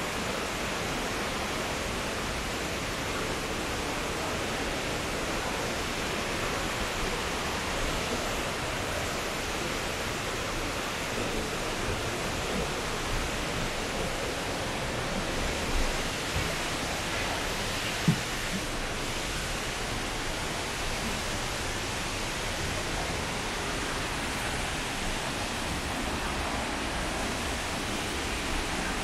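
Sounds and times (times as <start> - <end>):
waterfall roaring: 0.0 - 29.0
soft knocks: 18.0 - 18.6.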